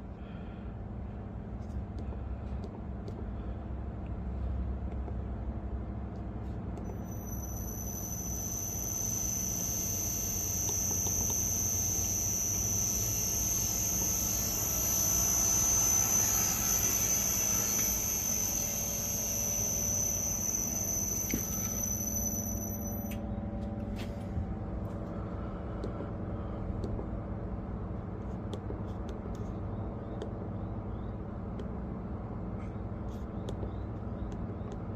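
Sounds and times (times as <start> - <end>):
motor low hum: 0.0 - 34.9
clicks: 6.2 - 23.8
motor high-pitched whine: 6.4 - 26.6.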